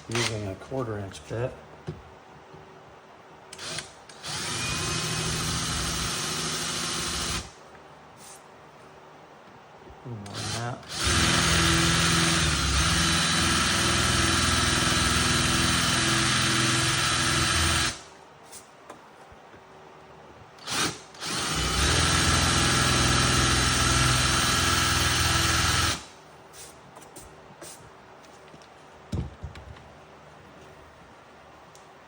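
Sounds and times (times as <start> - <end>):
power drill running under load: 3.5 - 7.5, 10.4 - 18.0, 20.6 - 26.0.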